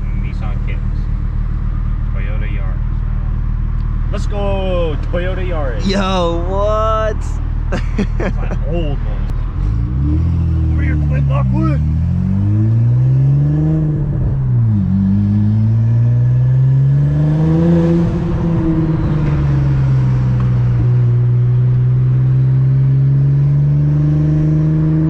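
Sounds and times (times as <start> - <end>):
car engine accelerating: 7.4 - 25.0.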